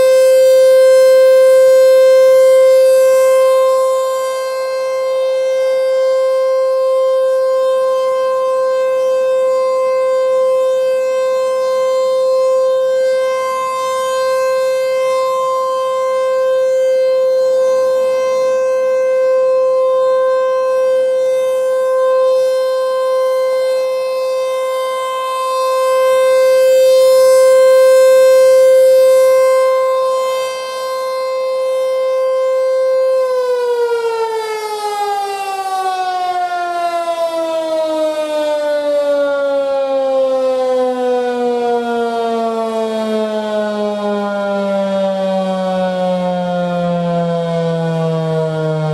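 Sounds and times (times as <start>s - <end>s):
warning siren steady tone: 0.0s - 48.9s.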